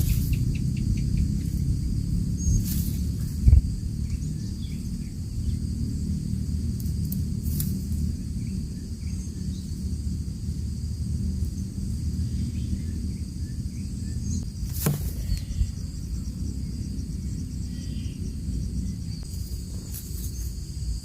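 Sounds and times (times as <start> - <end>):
insect chirring: 0.0 - 21.0
low rumble: 0.0 - 21.0
dull thump: 14.6 - 15.7.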